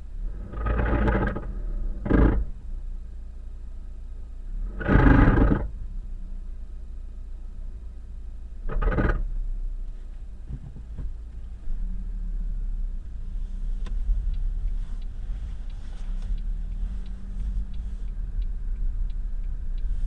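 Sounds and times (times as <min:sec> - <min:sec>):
car engine running: 0:00.0 - 0:20.0
faint knocks and ticks: 0:10.4 - 0:12.0, 0:13.6 - 0:20.0.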